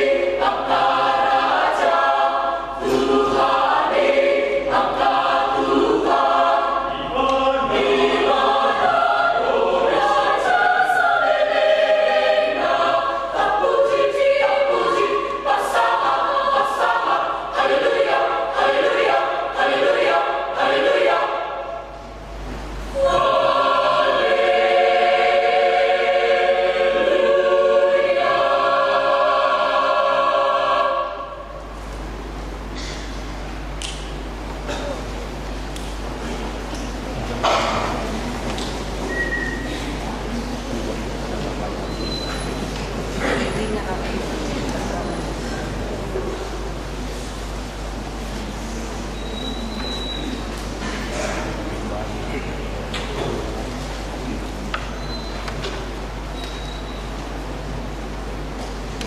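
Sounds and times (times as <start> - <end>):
choir singing: 0.0 - 22.2, 22.9 - 31.8.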